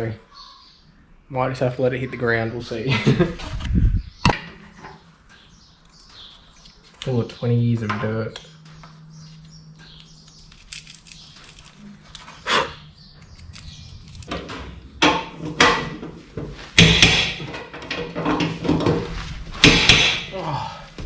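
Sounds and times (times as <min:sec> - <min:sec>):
clattering of hand work: 0:15.0 - 0:20.3.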